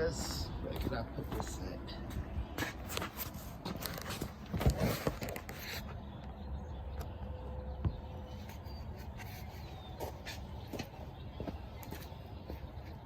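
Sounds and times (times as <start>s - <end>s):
steady low rumble: 0.0s - 3.6s
handling knocks and scrapes: 2.6s - 6.0s.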